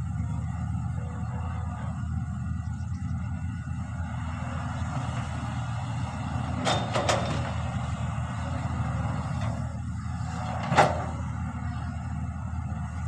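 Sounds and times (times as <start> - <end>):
diesel engine rumbling: 0.0 - 13.0.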